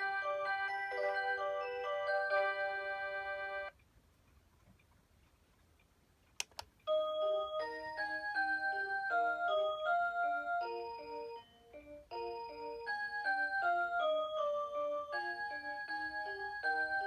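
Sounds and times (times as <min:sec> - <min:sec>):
alarm clock chime melody: 0:00.0 - 0:03.8, 0:06.9 - 0:17.0
sharp clicks: 0:05.8 - 0:06.9.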